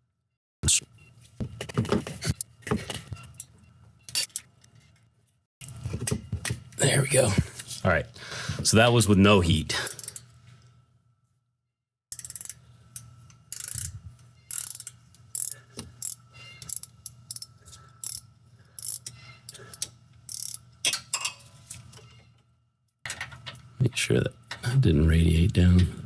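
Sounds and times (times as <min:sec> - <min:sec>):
ratcheting wrench clicking: 0:09.9 - 0:10.3, 0:12.1 - 0:18.2, 0:18.8 - 0:21.0.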